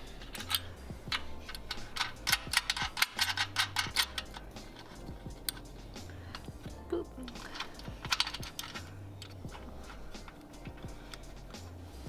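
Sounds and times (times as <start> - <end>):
wrench clicking on bolts: 0.2 - 5.7, 7.3 - 11.2.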